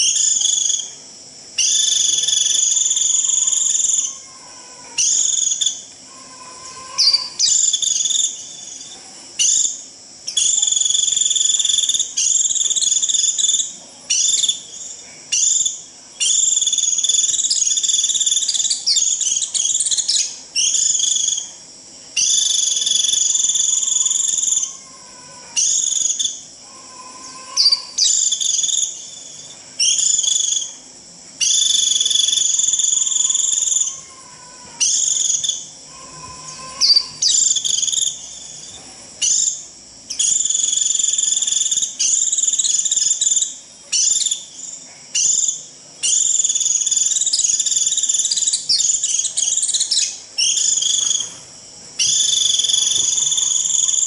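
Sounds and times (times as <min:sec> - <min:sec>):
bird flock call trills: 0:33.3 - 0:38.0.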